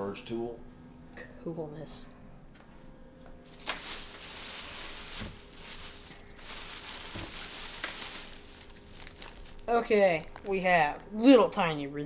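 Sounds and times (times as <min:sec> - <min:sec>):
plastic bag crinkling: 0:03.5 - 0:11.0.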